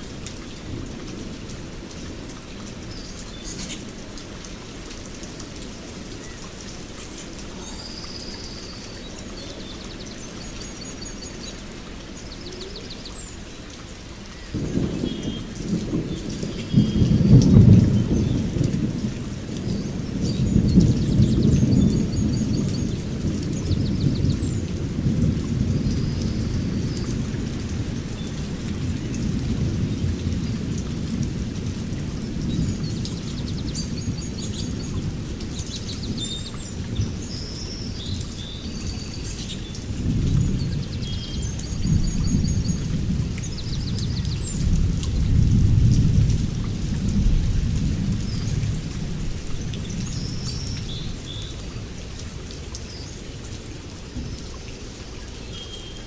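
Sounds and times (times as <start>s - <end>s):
small birds chirping: 2.9s - 4.5s, 5.9s - 13.7s, 32.4s - 44.9s.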